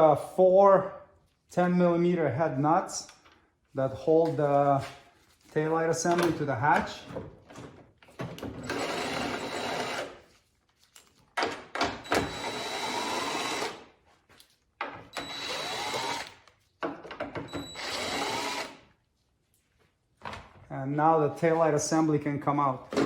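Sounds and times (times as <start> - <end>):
cordless power driver whirring: 15.2 - 16.4, 17.6 - 18.8.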